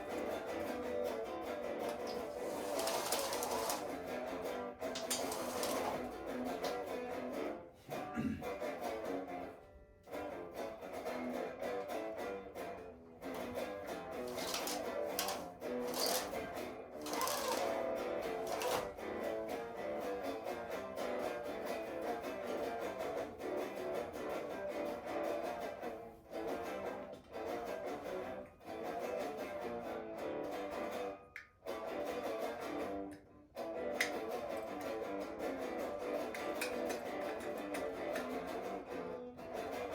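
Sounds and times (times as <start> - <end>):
guitar plucked notes: 17.8 - 39.9.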